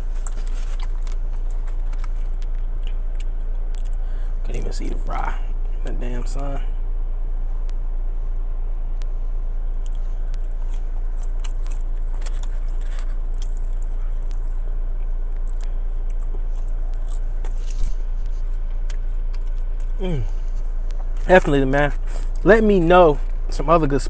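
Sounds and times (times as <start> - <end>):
chewing and crunching food: 0.0 - 4.7, 9.7 - 22.4
steady low hum: 0.0 - 24.0.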